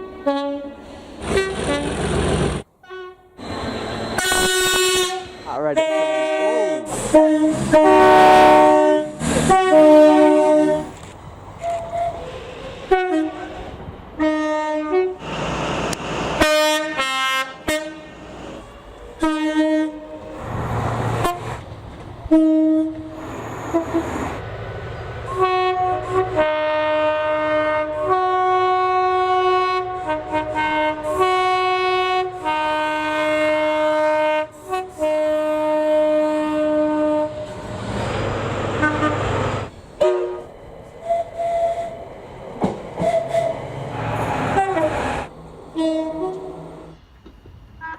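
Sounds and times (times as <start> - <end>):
two-tone train horn blasts: 0.0 - 2.0, 2.8 - 3.5, 4.2 - 10.9, 12.9 - 13.6, 14.2 - 15.2, 16.4 - 18.2, 19.2 - 20.3, 21.2 - 21.6, 22.3 - 24.1, 25.2 - 37.6, 38.8 - 39.4, 40.0 - 42.0, 44.5 - 45.2, 45.8 - 46.6
passing train running noise: 0.0 - 47.9.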